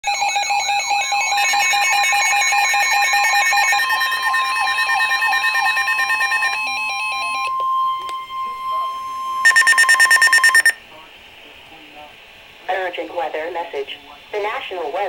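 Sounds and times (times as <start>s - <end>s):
steady warning tone: 0.1s - 10.8s
weather radio alarm beeping: 0.1s - 10.8s.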